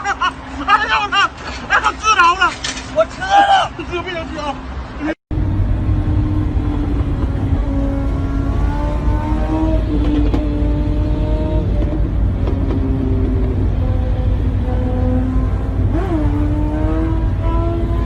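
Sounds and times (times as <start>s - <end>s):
motorcycle engine running: 5.3s - 10.7s.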